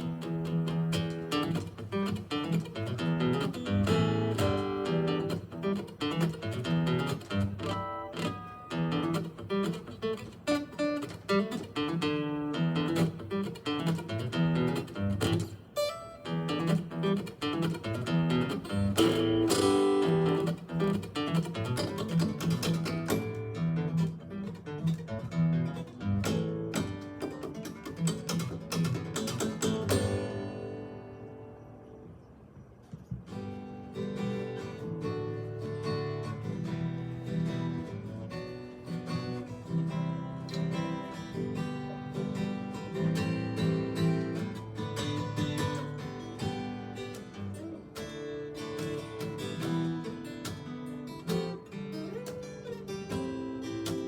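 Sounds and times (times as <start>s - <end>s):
fingerstyle acoustic guitar: 0.0s - 54.0s.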